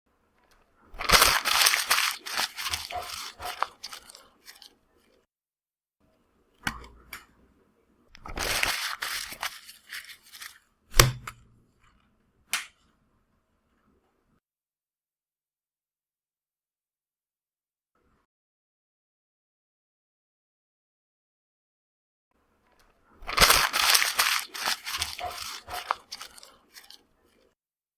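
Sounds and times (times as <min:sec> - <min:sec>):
paper crumpling: 0:01.0 - 0:05.1, 0:08.2 - 0:10.7, 0:23.2 - 0:27.5.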